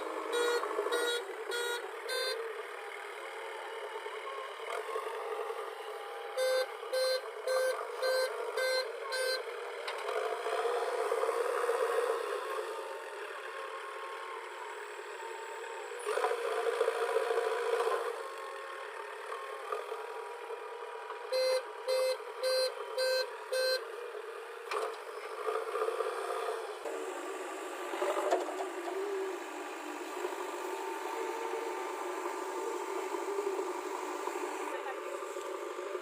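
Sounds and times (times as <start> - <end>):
backhoe loader engine running: 0.0 - 36.0
reversing alarm beeps: 0.2 - 2.4, 6.1 - 9.5, 21.3 - 23.9.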